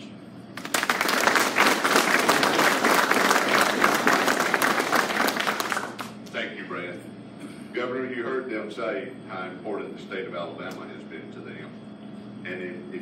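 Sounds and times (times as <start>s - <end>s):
audience applauding: 0.6s - 6.2s.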